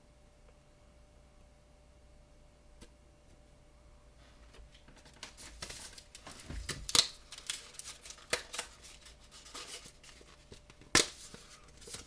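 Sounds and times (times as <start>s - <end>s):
foil wrapper crinkling and tearing: 5.0s - 12.0s.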